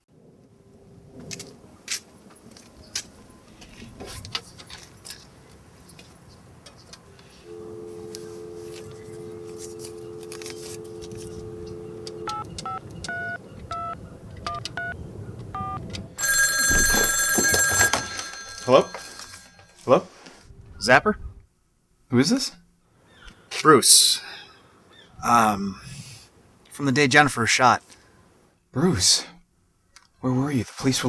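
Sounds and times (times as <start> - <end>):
touch-tone keypad beeps: 15.6 - 19.5
telephone dial tone: 15.6 - 19.6
telephone ringing: 15.6 - 19.7.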